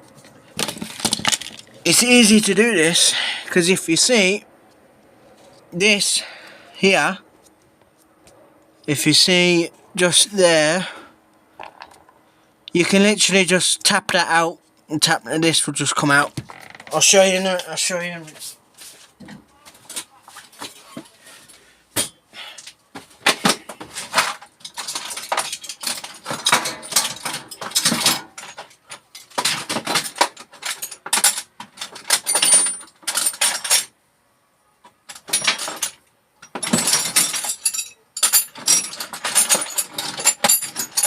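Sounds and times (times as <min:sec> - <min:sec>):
metal tools clinking and clattering: 0:00.2 - 0:02.9, 0:23.2 - 0:34.0, 0:35.0 - 0:41.0.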